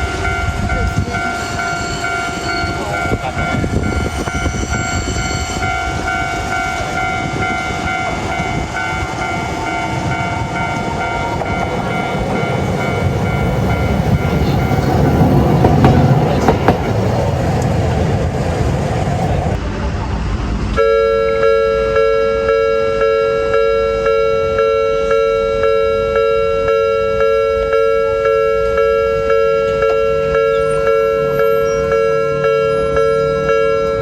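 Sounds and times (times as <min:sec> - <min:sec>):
tram rail rumble: 0:00.0 - 0:34.0
level crossing alarm tones: 0:20.8 - 0:34.0.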